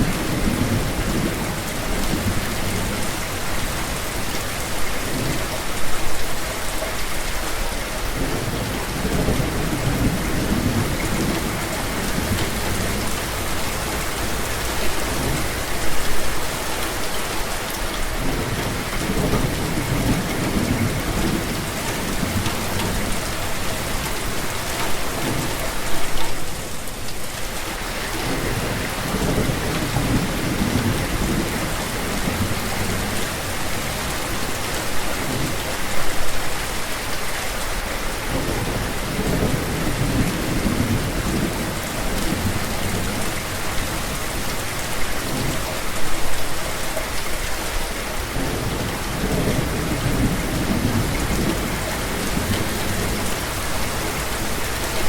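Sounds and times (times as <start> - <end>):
low rolling thunder: 0.0 - 3.0, 8.1 - 16.2, 18.1 - 25.7, 28.0 - 35.6, 38.2 - 44.4, 48.2 - 55.0
steady rain falling: 0.0 - 55.0.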